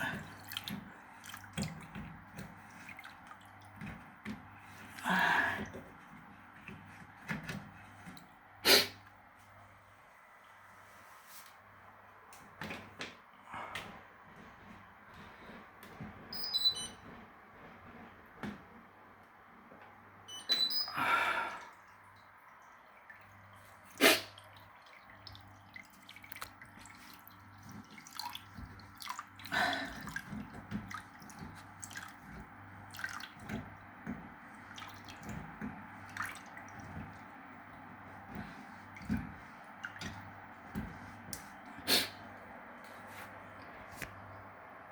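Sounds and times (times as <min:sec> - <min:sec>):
water dripping and trickling: 0:00.0 - 0:08.6, 0:21.5 - 0:44.5.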